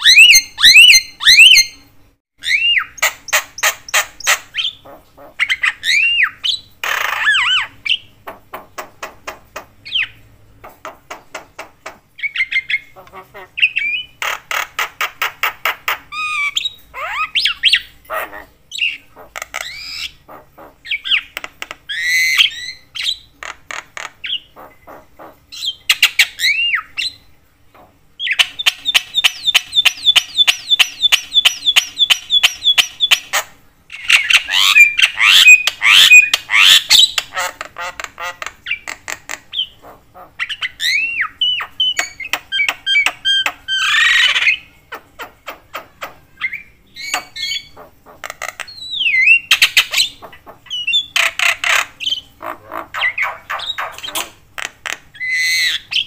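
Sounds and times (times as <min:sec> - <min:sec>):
myna calling: 0:09.9 - 0:26.9, 0:34.0 - 0:56.0.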